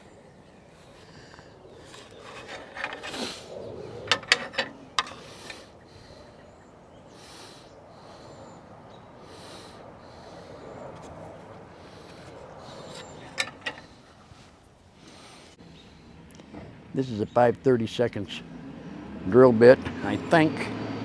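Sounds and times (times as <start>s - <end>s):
rubbing and scraping on wood: 1.2s - 5.7s, 10.9s - 15.5s.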